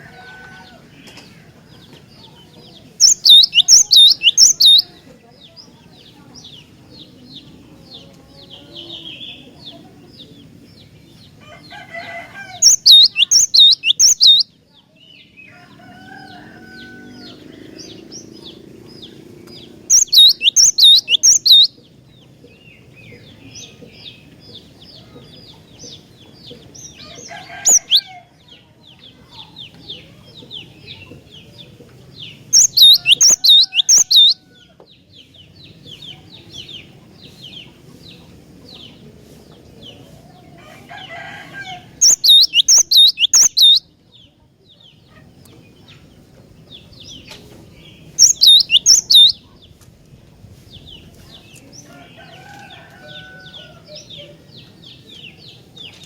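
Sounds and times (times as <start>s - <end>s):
bird singing repeated notes: 3.0s - 4.9s, 12.6s - 14.5s, 19.8s - 21.8s, 27.6s - 28.0s, 32.6s - 34.4s, 42.0s - 43.8s, 48.1s - 49.4s
faint chatter of high notes: 35.8s - 46.4s.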